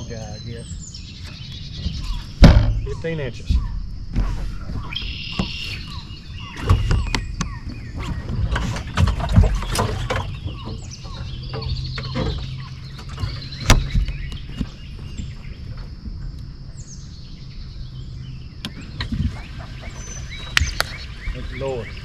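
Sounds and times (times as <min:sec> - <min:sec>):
steady low hum: 0:00.0 - 0:22.0
wild birds chirping: 0:00.0 - 0:22.0
sharp knocks: 0:02.4 - 0:04.2.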